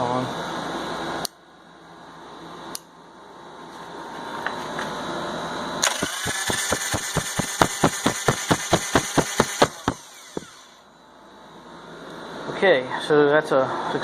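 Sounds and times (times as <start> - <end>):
engine cranking clatter: 5.8 - 10.5
electric starter whine: 5.8 - 10.9.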